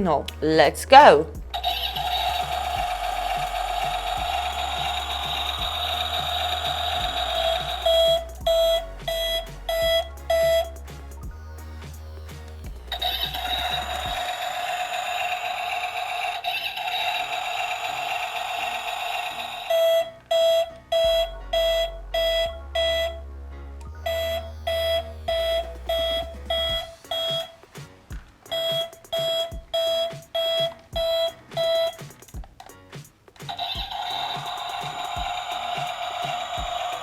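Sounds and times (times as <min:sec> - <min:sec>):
steady electronic tone: 0:01.3 - 0:15.8, 0:19.3 - 0:27.6
short reversing beeps: 0:01.6 - 0:10.8, 0:24.1 - 0:27.6, 0:28.5 - 0:32.0.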